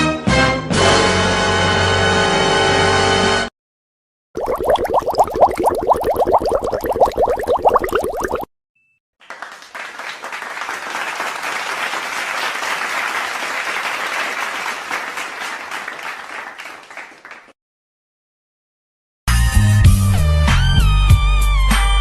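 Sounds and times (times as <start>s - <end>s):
crowd clapping: 9.2s - 17.6s.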